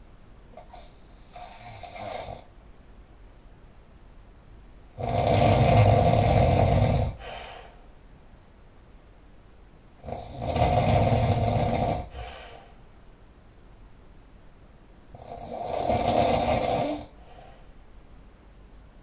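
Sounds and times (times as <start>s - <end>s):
person snoring loudly: 0.6s - 2.5s, 5.0s - 7.4s, 10.0s - 12.6s, 15.1s - 17.2s.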